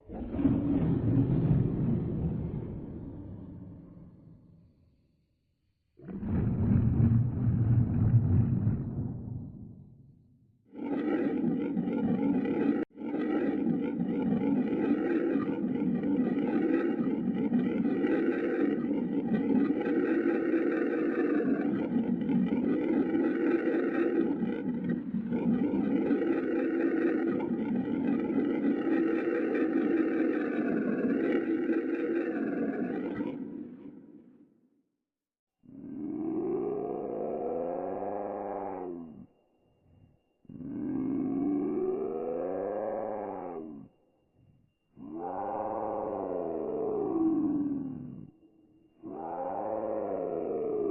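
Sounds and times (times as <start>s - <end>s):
low rumble: 0.2s - 4.7s, 6.1s - 10.4s
wavering monster roar: 10.7s - 34.2s, 35.8s - 39.2s, 40.5s - 43.9s, 45.0s - 48.3s, 49.0s - 50.9s.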